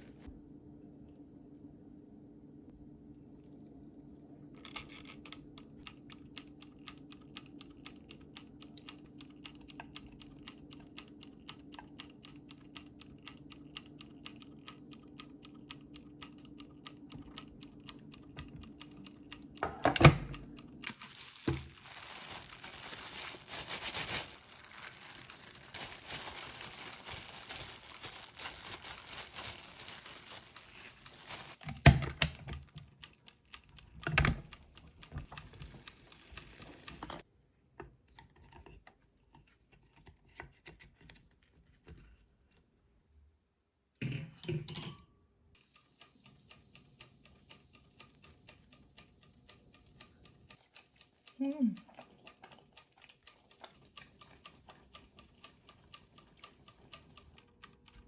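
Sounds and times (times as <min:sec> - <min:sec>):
low steady hum: 0:00.0 - 0:37.2
rustling and crinkling: 0:20.8 - 0:31.6.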